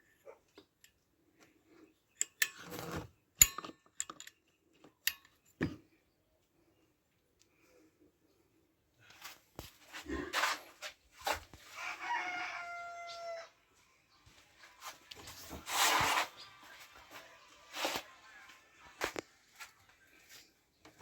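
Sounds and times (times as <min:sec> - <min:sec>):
rooster crowing: 0:11.7 - 0:13.6.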